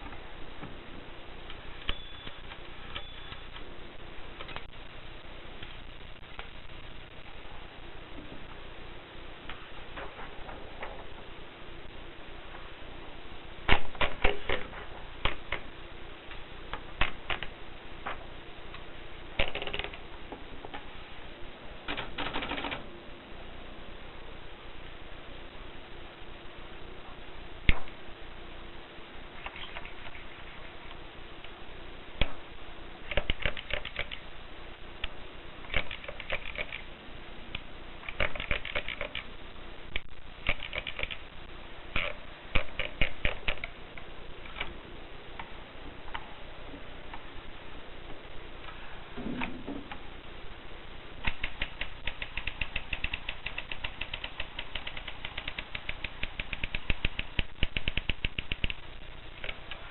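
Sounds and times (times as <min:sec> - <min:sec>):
typewriter keys clacking: 0:38.1 - 0:39.2, 0:40.5 - 0:41.2, 0:51.2 - 0:58.8.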